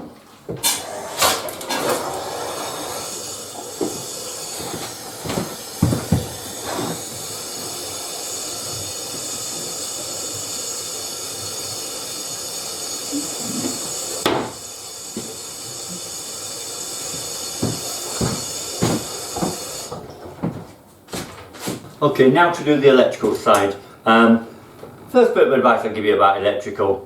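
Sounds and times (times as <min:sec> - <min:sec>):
water running through tap: 0:00.7 - 0:20.0.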